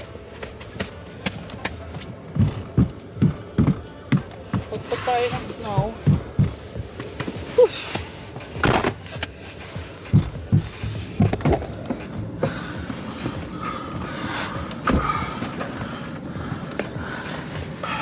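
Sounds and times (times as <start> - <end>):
thumps knocking snow off boots: 4.5 - 18.0.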